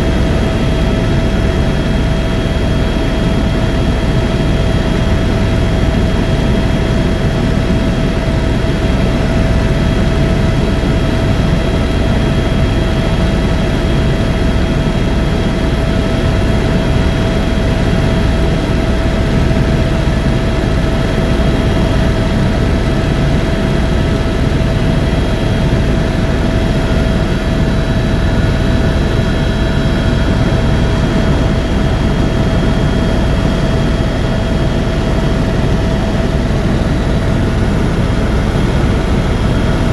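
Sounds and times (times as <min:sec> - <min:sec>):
helicopter rotor and engine drone: 0:00.0 - 0:39.9.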